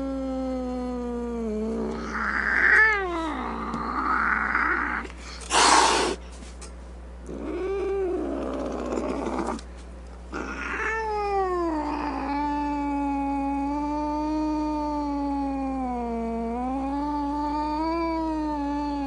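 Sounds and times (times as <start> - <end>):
cat hissing: 1.7 - 6.2, 10.3 - 14.4
cat yowling: 1.9 - 6.2, 10.4 - 19.0
cat meowing: 10.4 - 15.9.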